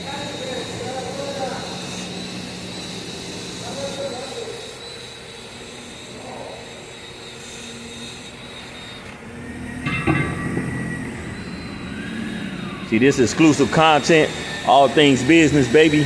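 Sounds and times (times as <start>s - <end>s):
faint high whine: 0.0s - 16.0s
mechanical drone: 0.0s - 16.0s
metallic knock: 9.8s - 10.9s.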